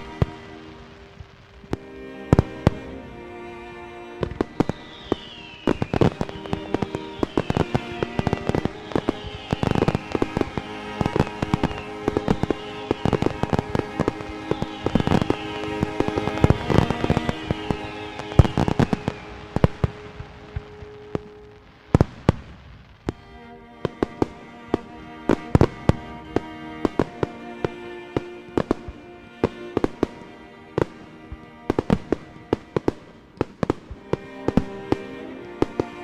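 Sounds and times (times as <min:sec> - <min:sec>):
music with long held tones: 0:00.0 - 0:36.0
fireworks bangs and crackles: 0:04.2 - 0:23.2, 0:23.8 - 0:27.2, 0:28.2 - 0:30.2, 0:30.8 - 0:35.0.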